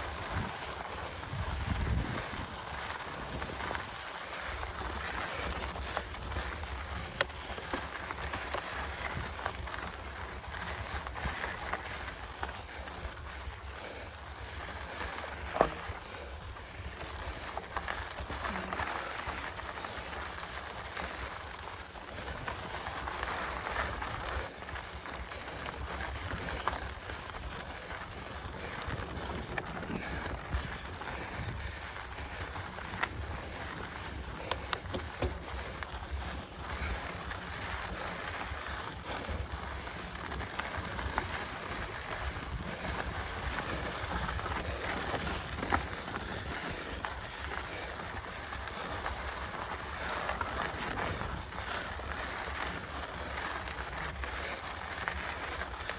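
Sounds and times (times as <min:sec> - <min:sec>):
wind rumble on microphone: 0:00.0 - 0:20.1, 0:22.0 - 0:54.2
mountain bike rolling and rattling: 0:00.0 - 0:55.9
sharp clicks and knocks: 0:34.5 - 0:35.4.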